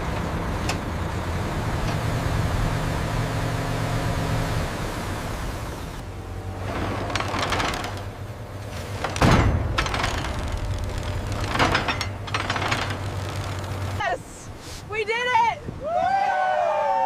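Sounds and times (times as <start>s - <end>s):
mechanical clanks and rattles: 6.6s - 14.0s
loud thump: 9.1s - 9.8s.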